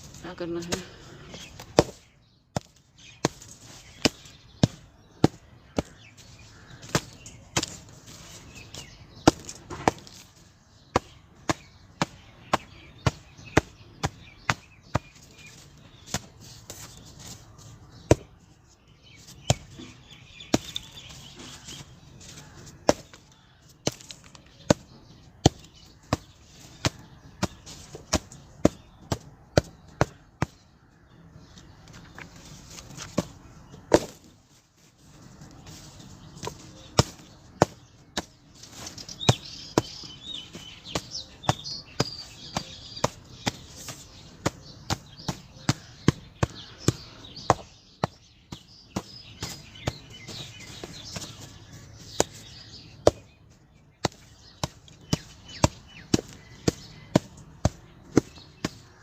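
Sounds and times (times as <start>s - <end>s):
cement lumps being struck: 33.1s - 34.3s.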